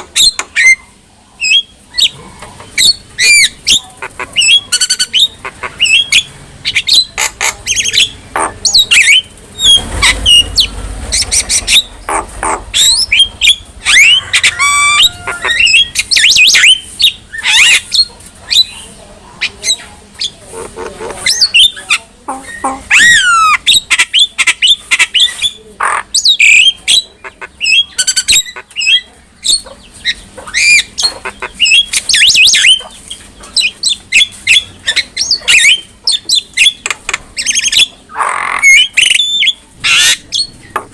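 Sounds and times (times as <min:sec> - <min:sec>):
myna singing squawks and whistles: 0:00.0 - 0:18.8, 0:21.2 - 0:32.9, 0:33.6 - 0:40.9.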